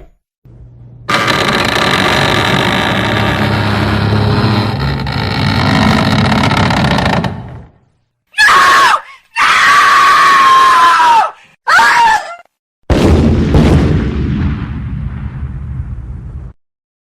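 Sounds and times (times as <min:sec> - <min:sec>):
loud bang with noisy tail: 0:12.9 - 0:16.6.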